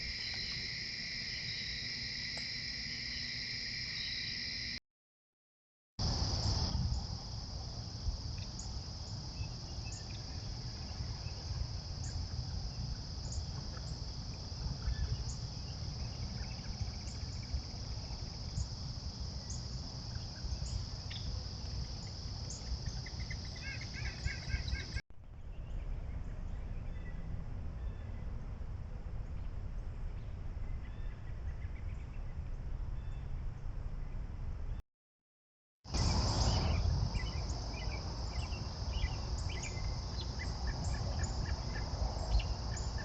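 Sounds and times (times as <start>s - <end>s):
crickets trilling: 0.0s - 4.8s, 6.0s - 25.0s, 35.9s - 43.0s
rapid insect chirping: 0.0s - 4.8s, 6.0s - 25.0s, 35.9s - 43.0s.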